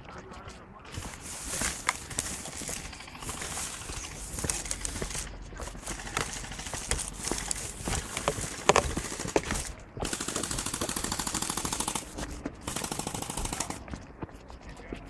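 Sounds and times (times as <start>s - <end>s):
airsoft guns firing: 6.0s - 13.8s.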